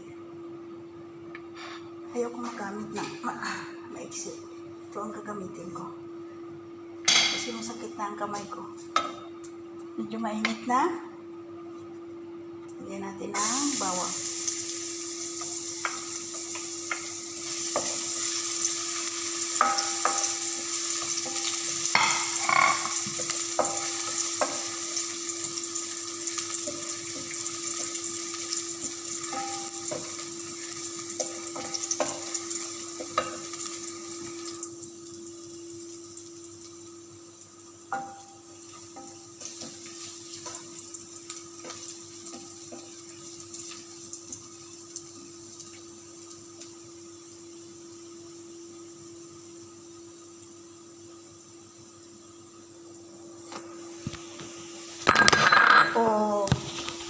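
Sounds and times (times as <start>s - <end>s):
garlic sizzling in hot oil: 13.3s - 55.2s, 56.0s - 57.0s.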